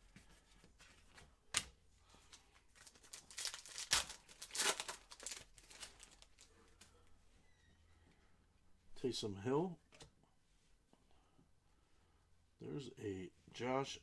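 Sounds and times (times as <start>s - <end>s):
card packs rustling and crinkling: 0.1s - 7.0s.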